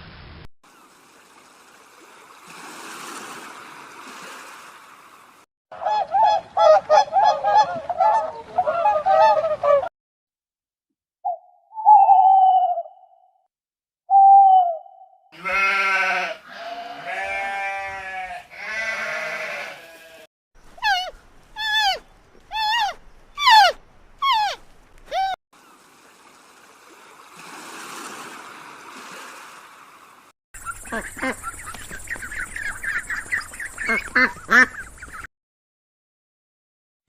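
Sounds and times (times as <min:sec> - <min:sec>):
duck quacking: 0:05.8 - 0:09.9, 0:30.7 - 0:35.3
animal bleating: 0:15.4 - 0:20.3.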